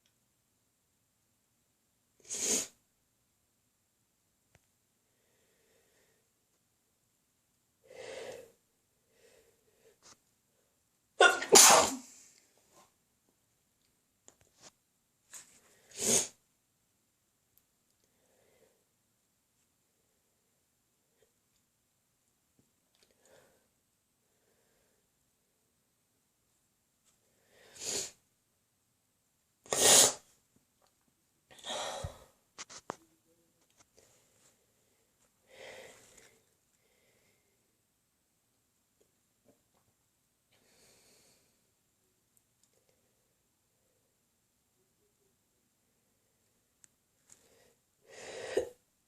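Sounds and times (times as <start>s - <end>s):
loud sneeze: 11.2s - 12.2s, 15.9s - 16.4s, 29.7s - 30.3s
breathy sound: 31.5s - 32.4s.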